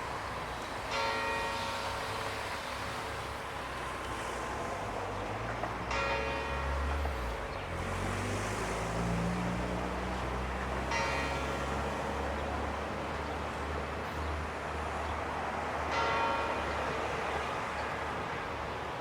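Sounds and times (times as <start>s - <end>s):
ship's bell ringing: 0.9s - 4.1s, 5.9s - 7.4s, 10.9s - 12.3s.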